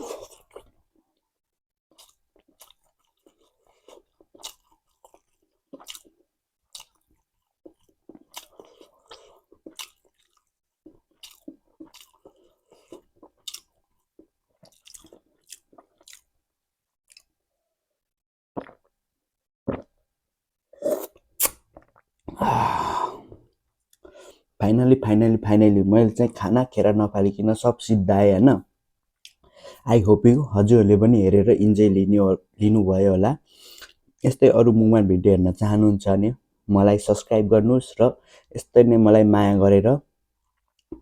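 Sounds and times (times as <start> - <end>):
person chewing food: 1.9 - 16.4, 17.0 - 17.4, 18.6 - 18.9, 19.7 - 19.9, 20.8 - 22.5.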